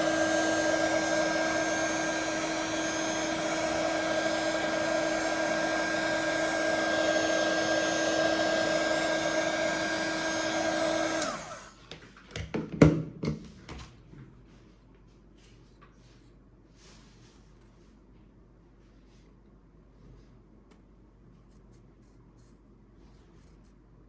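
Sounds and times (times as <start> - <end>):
hot-air blower fan whine: 0.0 - 12.0.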